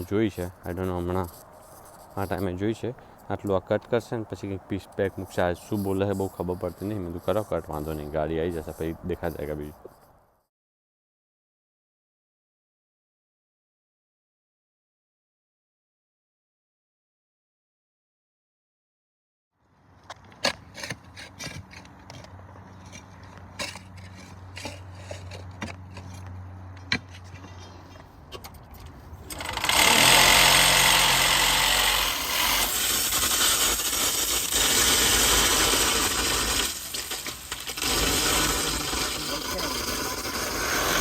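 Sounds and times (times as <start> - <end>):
power tool cutting pipe: 29.3 - 41.0.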